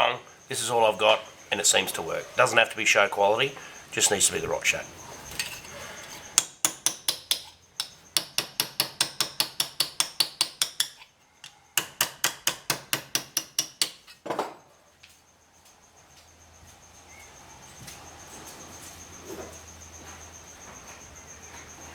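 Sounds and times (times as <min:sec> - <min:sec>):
metal scrape: 0:05.0 - 0:06.4
hammer beating steel panel: 0:06.4 - 0:11.0.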